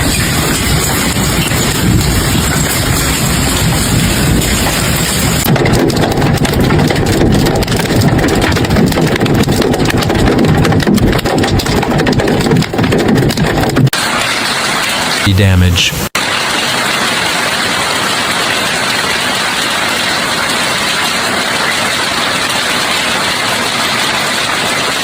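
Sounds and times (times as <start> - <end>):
deep rumble: 0.0 - 13.8
hail clattering on hard surfaces: 0.0 - 15.2, 16.2 - 25.0.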